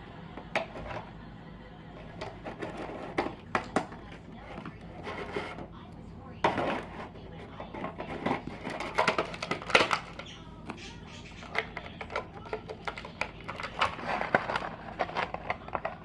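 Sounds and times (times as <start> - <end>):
packaging rustling: 7.7 - 10.4, 11.4 - 16.0
plastic toy pieces clicking: 8.1 - 10.4, 11.4 - 16.0.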